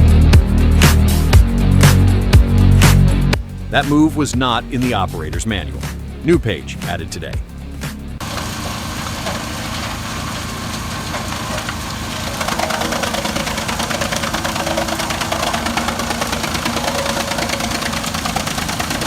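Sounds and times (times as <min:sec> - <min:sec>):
wood chipper running: 0:08.2 - 0:19.0.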